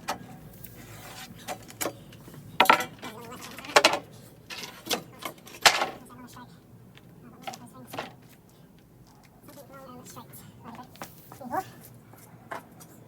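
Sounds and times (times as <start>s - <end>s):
tools and wood knocking on workbench: 2.6s - 3.1s.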